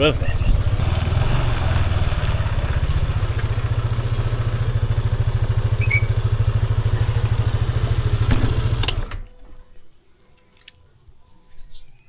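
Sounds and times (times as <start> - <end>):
motorbike engine idling: 0.0 - 9.3.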